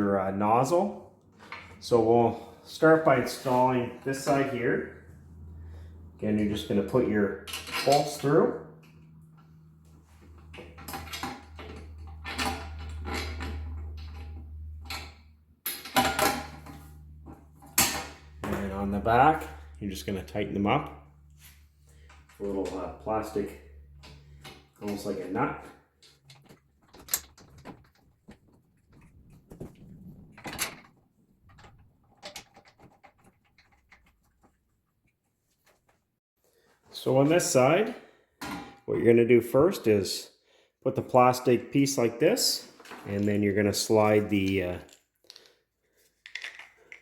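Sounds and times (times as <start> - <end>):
steady low hum: 2.3 - 7.7
bolts and plastic parts clicking: 26.0 - 28.6, 44.4 - 47.0
plastic parts clicking and rattling: 44.4 - 47.0.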